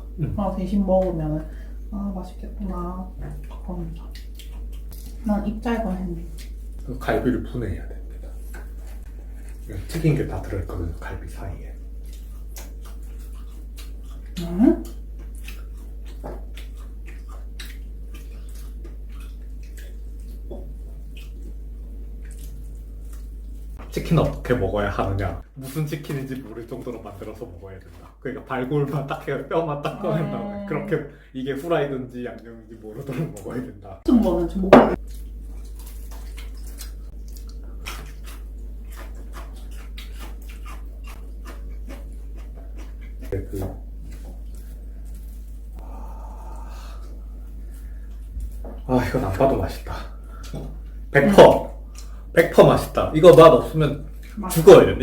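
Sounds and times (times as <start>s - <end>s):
low steady hum: 0.0s - 55.0s
person eating with wet smacking: 3.1s - 5.3s, 6.2s - 7.1s, 7.9s - 24.5s, 34.2s - 54.7s.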